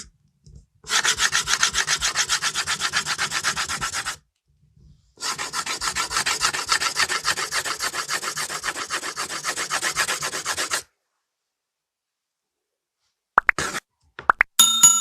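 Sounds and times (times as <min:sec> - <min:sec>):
pencil scratching on paper: 0:00.9 - 0:04.2, 0:05.2 - 0:10.9, 0:13.5 - 0:13.8.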